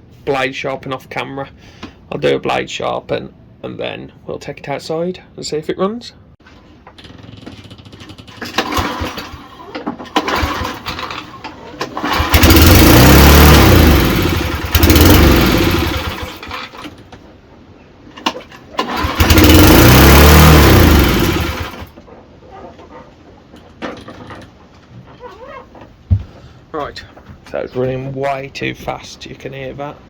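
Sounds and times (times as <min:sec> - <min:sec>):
lawn mower engine over-revving: 0:08.4 - 0:17.0, 0:18.8 - 0:22.0.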